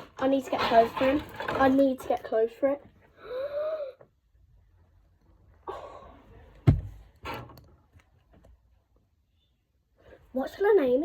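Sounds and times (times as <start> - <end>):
sharp thud on hard surface: 6.6 - 7.0.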